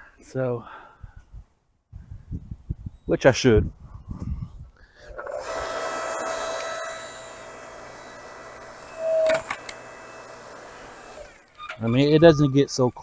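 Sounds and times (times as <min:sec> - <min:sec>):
small motor whining: 0:05.1 - 0:12.6.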